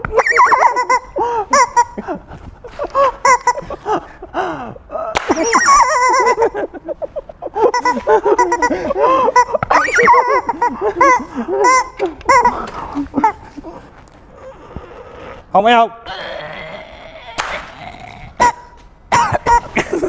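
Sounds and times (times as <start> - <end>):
people laughing in squealing bursts: 0.0 - 13.9, 19.4 - 20.0.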